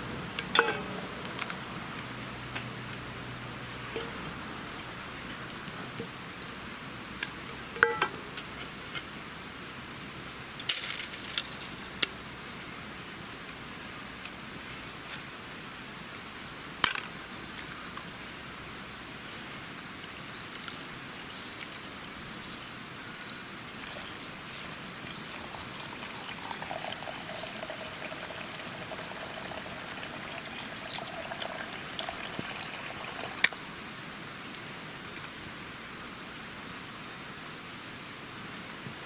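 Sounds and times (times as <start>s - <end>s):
faint hiss: 0.0s - 39.0s
liquid pouring into container: 23.8s - 33.6s.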